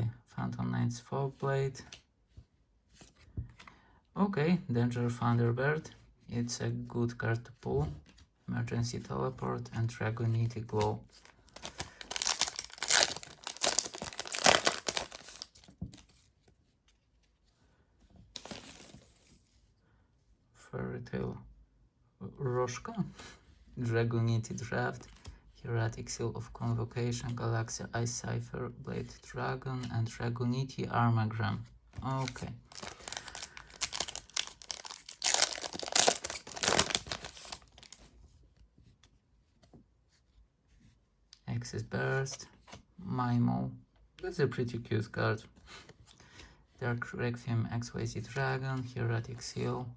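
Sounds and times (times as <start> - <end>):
cards being handled: 9.8 - 16.3, 18.4 - 19.3, 32.0 - 38.1
foil wrapper crinkling and tearing: 11.3 - 15.7, 32.2 - 38.1.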